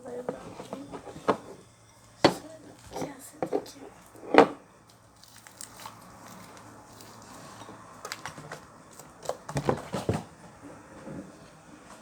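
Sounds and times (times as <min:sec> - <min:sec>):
objects clicking and knocking: 0:05.2 - 0:10.2.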